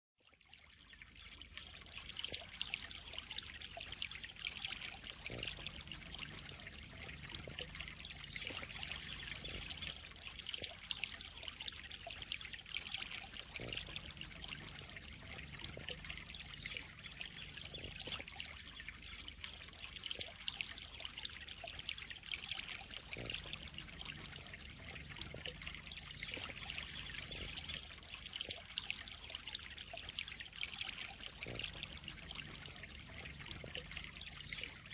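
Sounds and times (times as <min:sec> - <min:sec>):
water trickling into a pond: 0:00.2 - 0:34.9.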